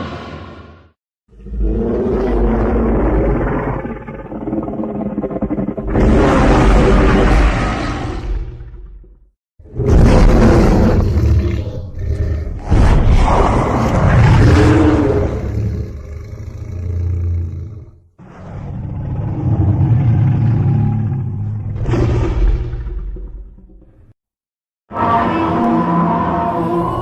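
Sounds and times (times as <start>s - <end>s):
monster roaring: 1.4s - 8.7s, 9.7s - 22.9s.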